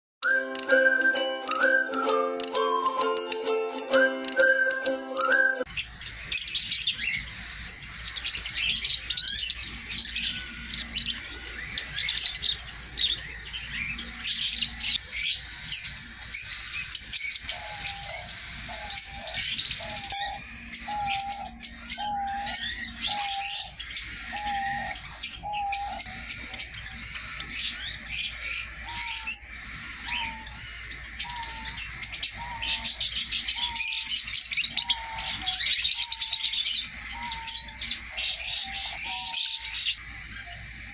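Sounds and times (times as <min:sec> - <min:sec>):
repeating lower bird call: 0:00.2 - 0:40.9
small birds chirping and twittering: 0:00.2 - 0:40.9.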